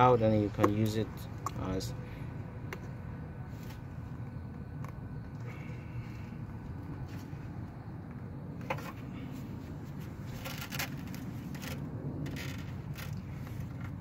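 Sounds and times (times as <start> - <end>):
steady low rumble: 0.0 - 14.0
connector clicks and scrapes: 10.2 - 14.0.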